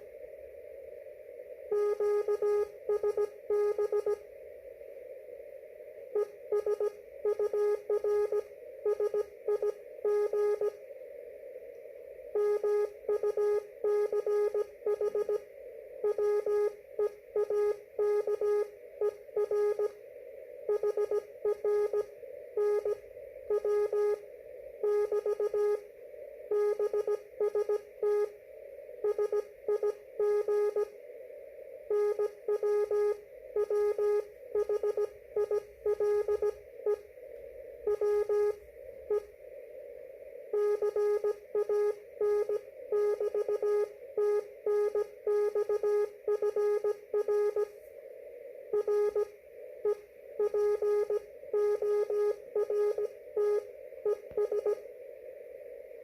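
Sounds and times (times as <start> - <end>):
receiver hiss: 0.0 - 43.2, 46.1 - 56.0
morse code tone: 1.7 - 4.2, 6.2 - 10.8, 12.4 - 20.0, 20.7 - 24.2, 24.8 - 25.9, 26.5 - 28.4, 29.0 - 31.0, 31.9 - 37.1, 37.8 - 39.3, 40.5 - 47.8, 48.8 - 54.9.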